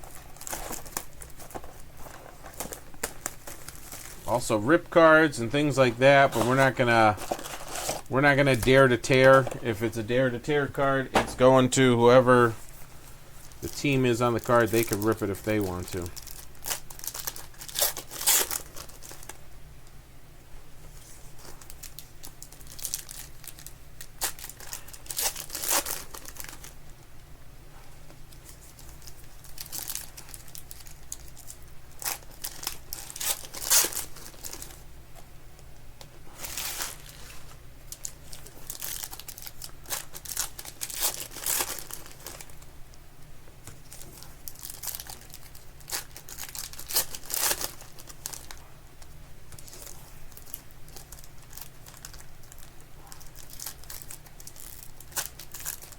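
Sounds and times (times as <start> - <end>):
foil wrappers tearing and crinkling: 0.0 - 4.8, 5.7 - 8.1, 13.4 - 19.4, 21.4 - 26.8, 28.7 - 34.8, 36.4 - 42.6, 43.8 - 55.9
cards being handled: 5.7 - 9.8.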